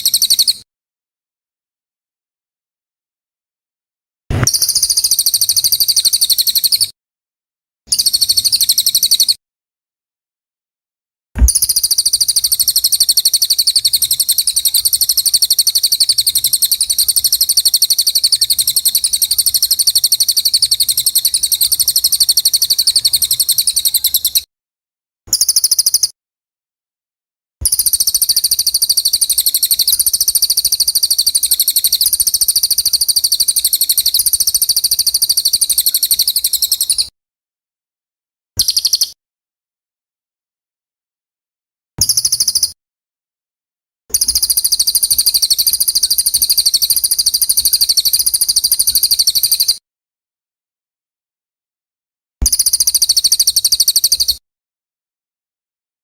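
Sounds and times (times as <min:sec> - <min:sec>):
songbird singing rapid high notes: 0:11.4 - 0:24.5, 0:27.6 - 0:37.1.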